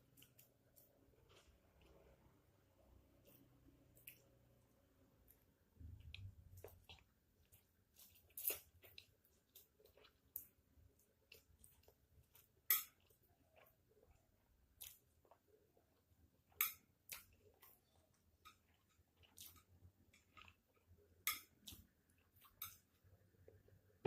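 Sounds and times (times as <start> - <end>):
person chewing noodles: 0.0 - 23.8.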